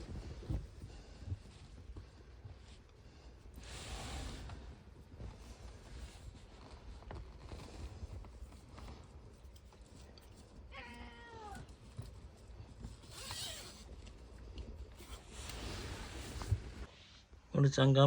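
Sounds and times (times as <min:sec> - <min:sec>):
cat meowing: 0:10.7 - 0:11.7.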